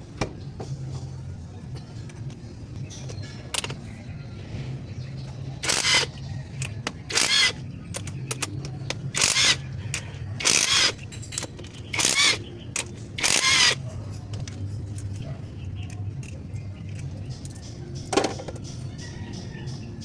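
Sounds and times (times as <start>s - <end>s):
ratchet wrench clicking: 5.6s - 8.5s, 9.2s - 13.8s.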